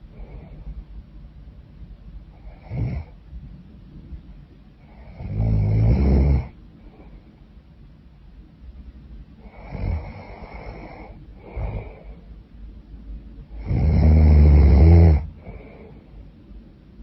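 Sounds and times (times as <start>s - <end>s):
woman snoring: 2.4s - 3.2s, 4.9s - 6.6s, 9.4s - 12.1s, 13.6s - 15.8s.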